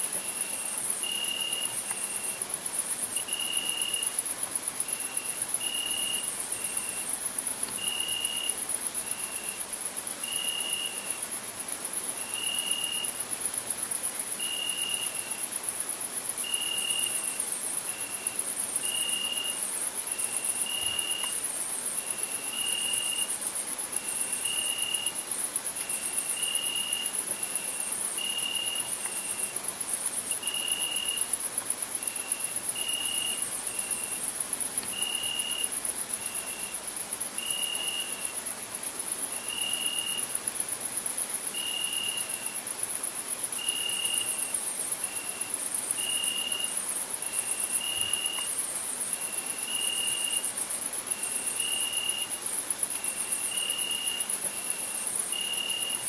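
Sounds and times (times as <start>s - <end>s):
crickets chirring: 0.0s - 56.0s.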